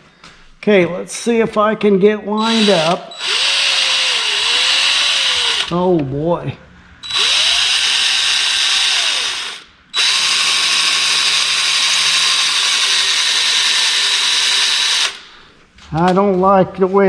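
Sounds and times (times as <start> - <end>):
electric drill boring into metal: 2.4 - 5.8, 7.0 - 15.4.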